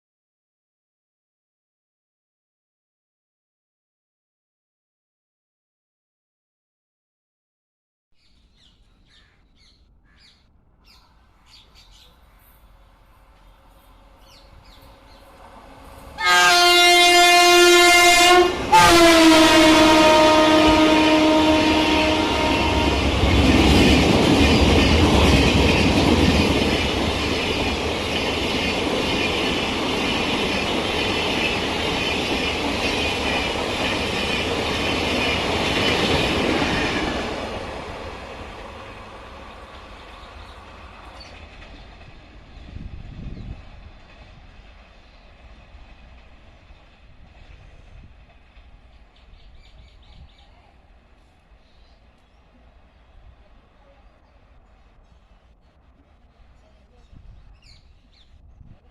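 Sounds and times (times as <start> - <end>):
train horn blasts: 16.2 - 23.2
train wheels clattering on rails: 22.8 - 49.8.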